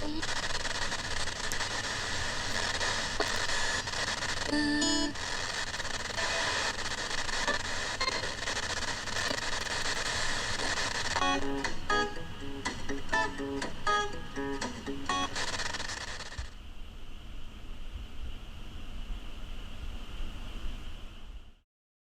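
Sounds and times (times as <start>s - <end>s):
radio hiss: 0.0s - 16.6s
plucked guitar melody: 11.2s - 15.2s.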